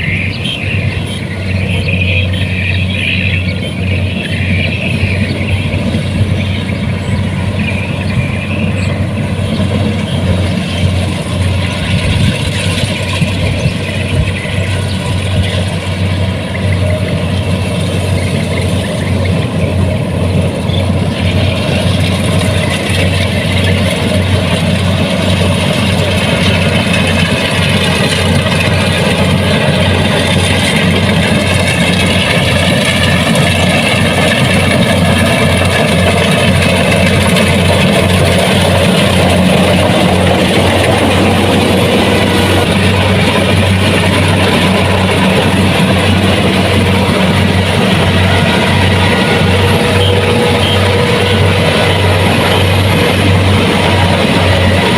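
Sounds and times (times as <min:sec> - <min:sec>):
diesel engine running: 0:00.0 - 0:54.9
high-pitched whine: 0:00.0 - 0:54.9.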